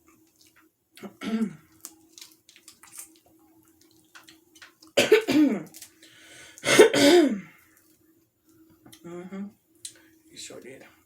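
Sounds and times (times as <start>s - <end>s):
woman coughing hard: 1.2s - 1.6s, 5.0s - 5.7s, 6.6s - 7.5s.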